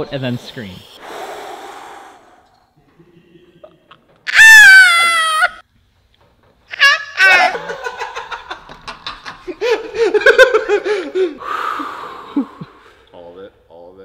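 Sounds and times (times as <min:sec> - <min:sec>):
high-pitched vocal squeal: 0:04.3 - 0:05.6
people laughing hard: 0:06.8 - 0:11.4.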